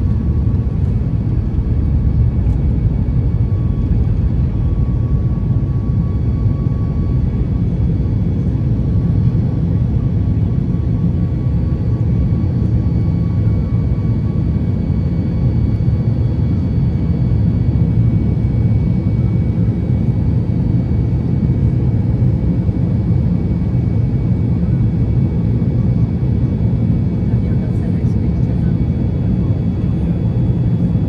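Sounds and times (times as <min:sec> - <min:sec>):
airliner cabin drone: 0:00.0 - 0:31.0.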